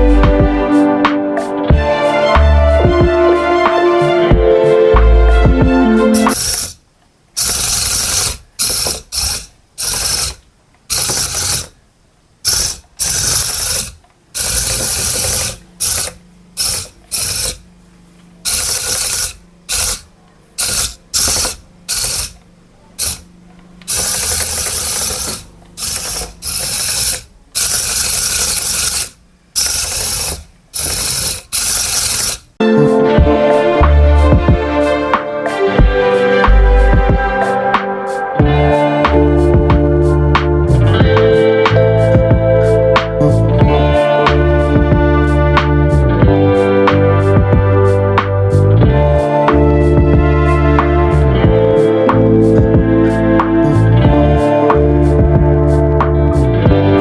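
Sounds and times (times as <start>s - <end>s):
toy motor whirring and grinding: 6.2s - 6.8s, 7.4s - 11.8s, 12.4s - 17.6s, 18.5s - 22.4s, 23.0s - 23.2s, 23.9s - 32.6s.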